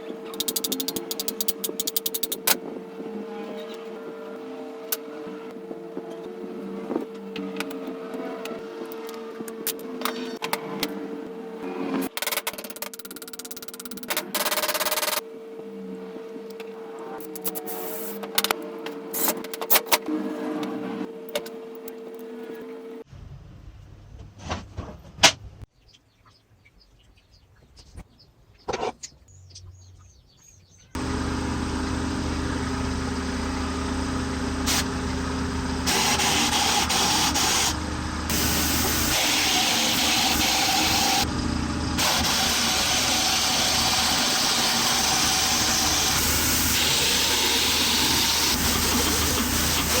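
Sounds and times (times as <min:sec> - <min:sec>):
air screwdriver whining and hissing: 0:34.7 - 0:34.9, 0:35.8 - 0:41.3, 0:42.0 - 0:50.0.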